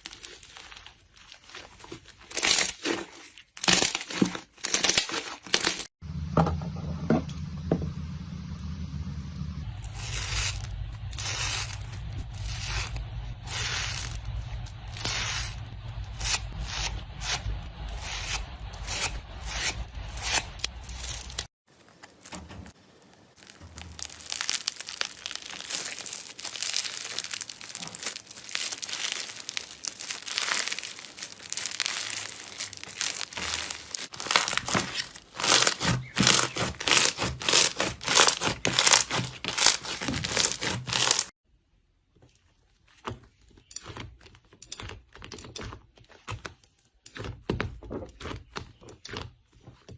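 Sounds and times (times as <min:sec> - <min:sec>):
slime crackling and popping: 0:09.8 - 0:17.4, 0:20.3 - 0:41.3.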